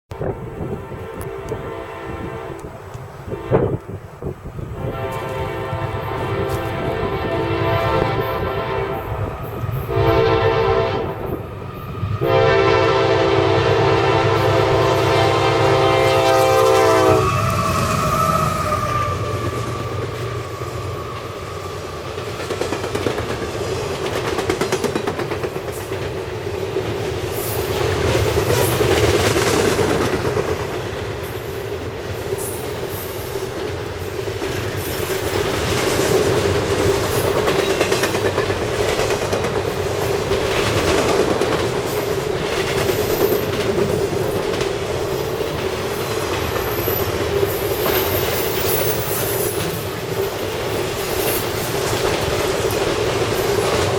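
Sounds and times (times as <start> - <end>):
freight train rumble: 0.1 - 53.9
high-pitched wheel squeals: 17.0 - 22.1, 47.8 - 49.7
wheels clicking over rail joints: 22.0 - 53.9.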